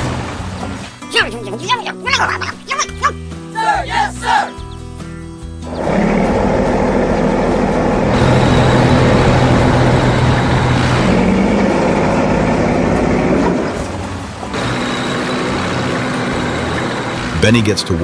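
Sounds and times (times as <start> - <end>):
heavy machinery engines running: 5.6 - 18.0.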